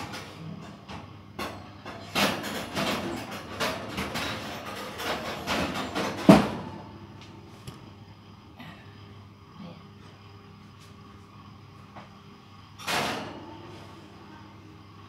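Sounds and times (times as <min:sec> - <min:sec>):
oven tray scraping and clanking: 0:00.0 - 0:06.8, 0:12.8 - 0:14.2.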